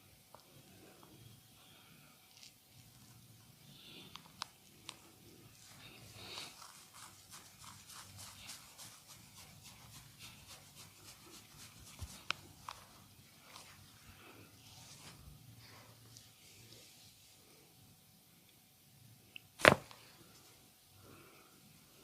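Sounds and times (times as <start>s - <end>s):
hands rubbing or patting: 5.6s - 13.8s.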